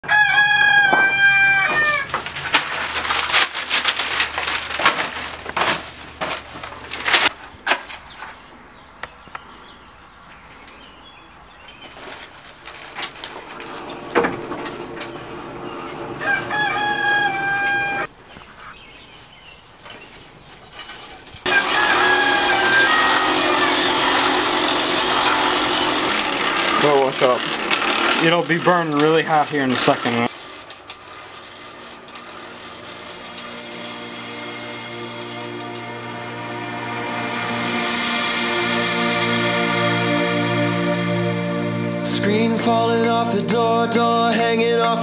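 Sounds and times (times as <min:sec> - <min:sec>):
rooster crowing: 0:00.0 - 0:02.2, 0:15.6 - 0:18.1, 0:21.5 - 0:26.1.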